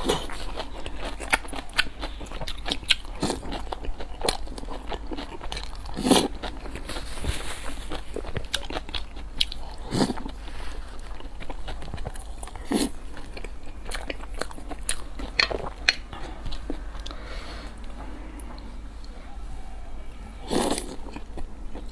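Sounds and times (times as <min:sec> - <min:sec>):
person chewing crunchy food: 0:00.0 - 0:18.7, 0:20.4 - 0:21.9
chewing clicks and smacks: 0:11.2 - 0:17.2.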